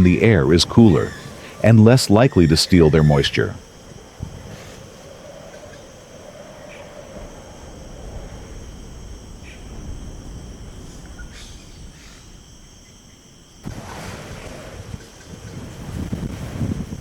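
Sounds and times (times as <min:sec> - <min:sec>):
high insect drone: 0:00.0 - 0:17.0
low wind-like rumble: 0:00.0 - 0:17.0.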